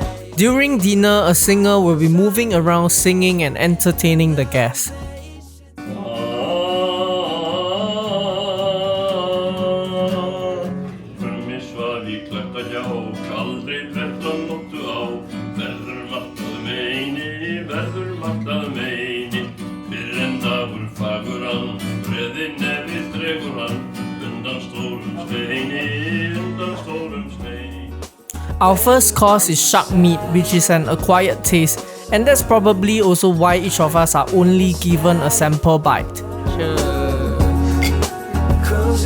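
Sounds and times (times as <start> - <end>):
person singing: 0.0 - 10.7, 28.3 - 39.0
acoustic guitar plucking: 0.0 - 39.0.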